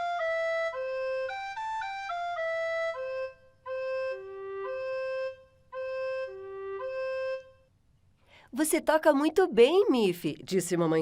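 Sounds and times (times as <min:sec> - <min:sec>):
flute playing a simple tune: 0:00.0 - 0:07.7.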